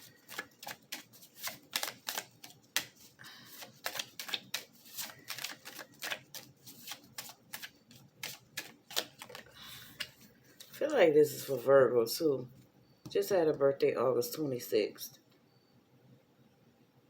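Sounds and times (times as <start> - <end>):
cards being shuffled: 0.0 - 10.9.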